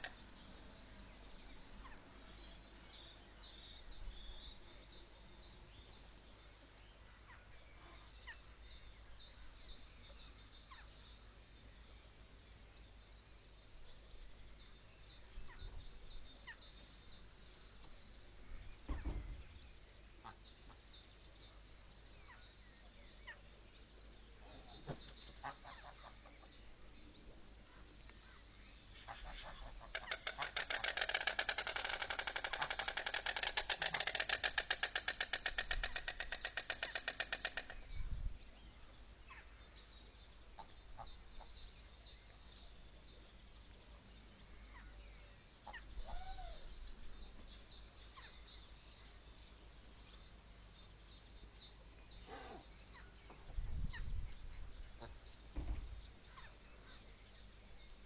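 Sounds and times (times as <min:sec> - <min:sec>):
small birds chirping: 0:00.0 - 0:58.0
low thump: 0:18.8 - 0:19.5, 0:55.5 - 0:56.0
geese calling: 0:29.0 - 0:37.8.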